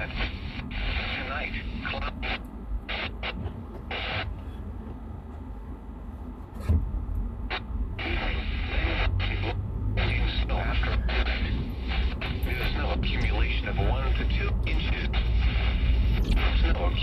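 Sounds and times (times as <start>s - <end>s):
vehicle road and engine rumble: 0.0s - 17.0s
weather broadcast through speaker: 0.0s - 17.0s.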